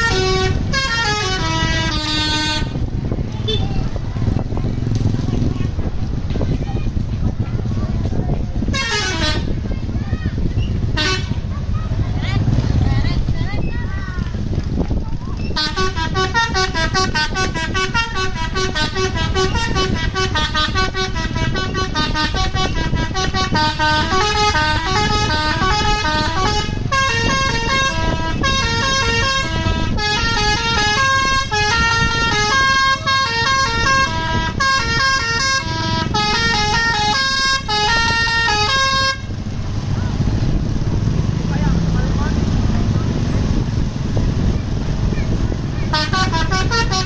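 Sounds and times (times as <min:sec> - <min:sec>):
multi-tone musical bus horn: 0:00.0 - 0:03.9, 0:08.6 - 0:10.0, 0:10.8 - 0:11.6, 0:15.5 - 0:39.6, 0:45.3 - 0:47.0
engine low rumble: 0:00.0 - 0:47.0.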